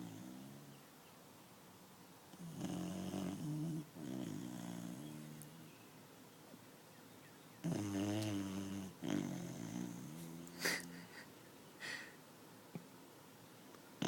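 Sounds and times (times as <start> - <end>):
puppy snoring: 0.0 - 0.7, 2.3 - 5.6, 7.6 - 11.1.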